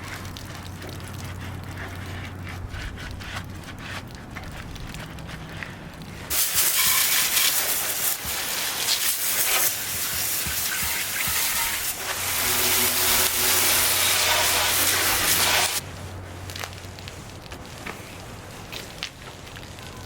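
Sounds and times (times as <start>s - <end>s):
pressure washer hum: 6.3s - 15.8s
pressure washer spray hissing: 6.3s - 15.8s.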